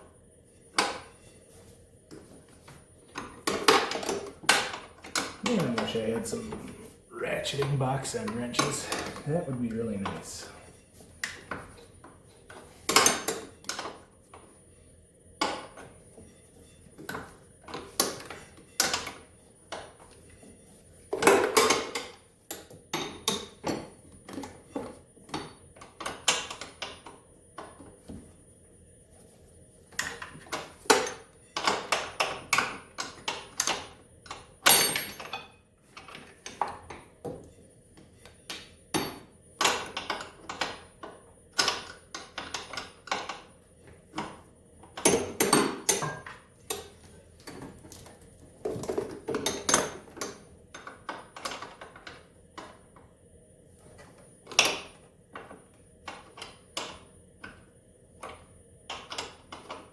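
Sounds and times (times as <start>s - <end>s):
wrench clinking on bolts: 34.6s - 35.4s.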